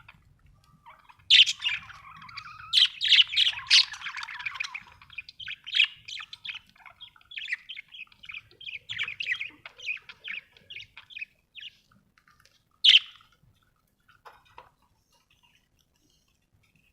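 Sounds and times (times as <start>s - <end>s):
budgerigars chirping: 0.8s - 12.0s, 12.8s - 13.4s.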